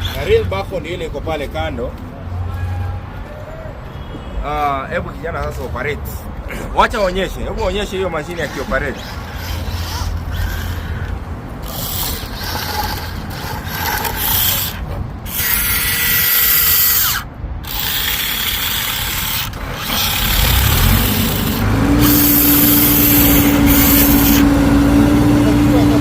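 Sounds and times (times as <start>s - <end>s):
toy mechanism whirring and ratcheting: 0.0s - 0.4s, 8.2s - 24.4s
steady engine hum: 6.0s - 26.0s.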